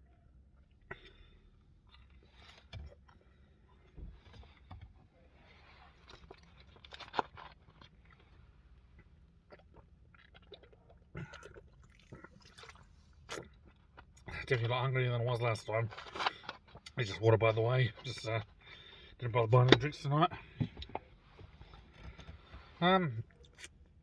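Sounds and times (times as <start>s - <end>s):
person chewing pizza: 5.4s - 14.4s, 20.6s - 24.0s.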